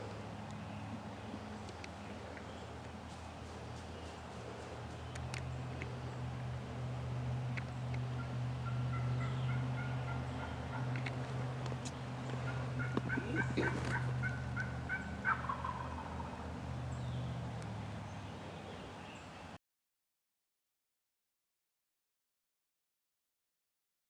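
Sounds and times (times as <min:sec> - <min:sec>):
steady low hum: 0:00.0 - 0:18.9
wild turkey yelping: 0:08.1 - 0:11.4, 0:12.2 - 0:16.4.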